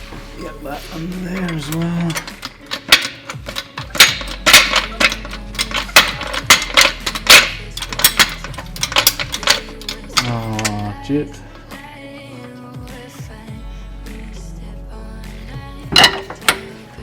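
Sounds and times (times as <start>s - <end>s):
metallic clicks and clanks of tools: 0.9s - 11.0s, 15.9s - 17.0s.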